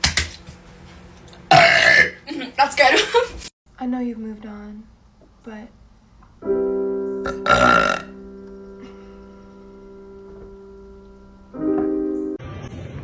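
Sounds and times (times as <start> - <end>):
woman burping: 1.5 - 2.2, 7.3 - 8.1
keyboard chord: 6.4 - 12.4.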